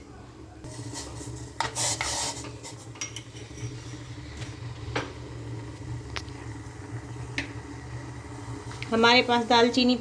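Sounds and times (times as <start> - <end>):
metal utensils clattering and scraping: 0.9 - 3.9.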